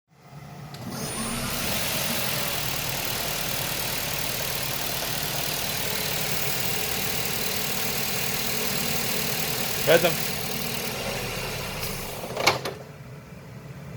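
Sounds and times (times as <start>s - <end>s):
car engine running hum and hiss: 0.2s - 13.9s.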